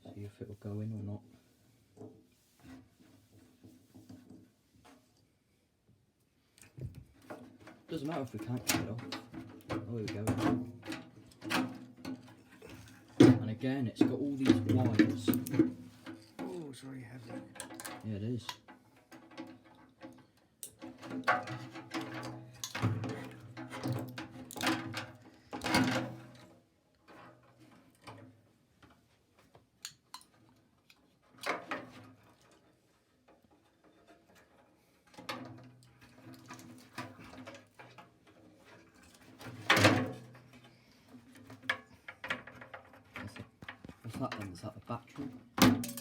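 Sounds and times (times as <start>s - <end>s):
metal parts knocking and clattering: 7.9s - 16.6s, 45.6s - 46.0s.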